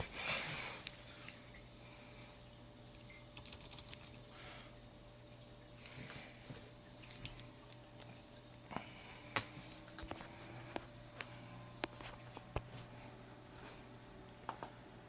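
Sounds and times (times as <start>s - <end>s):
low steady hum: 0.0s - 15.0s
computer keyboard key presses: 3.4s - 4.0s.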